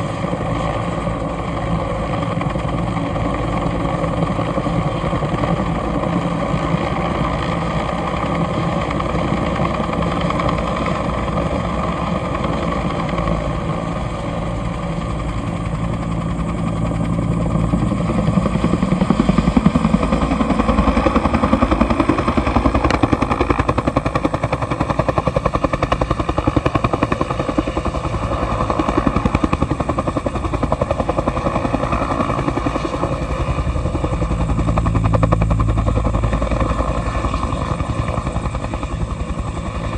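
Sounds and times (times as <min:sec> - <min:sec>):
helicopter rotor beat: 0:00.0 - 0:39.9
helicopter turbine whine: 0:00.0 - 0:39.9.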